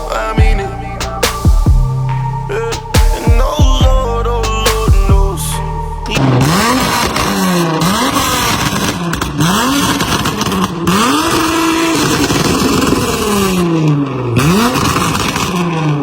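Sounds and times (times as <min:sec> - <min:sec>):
car engine revving: 0:00.0 - 0:16.0
exhaust crackles and pops: 0:06.0 - 0:16.0.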